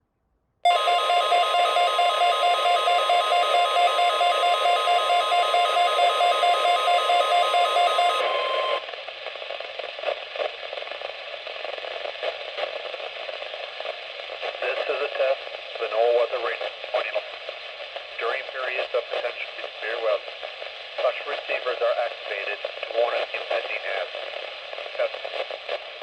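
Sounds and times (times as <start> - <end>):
pulsing radio alarm tone: 0.7 - 8.9
radio hiss and crackle: 1.0 - 26.0.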